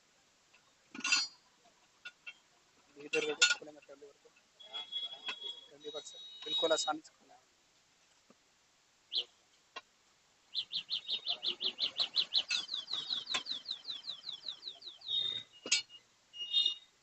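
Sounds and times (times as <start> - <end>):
bird chirping rapidly: 4.6 - 7.0, 9.1 - 9.4, 10.5 - 16.9.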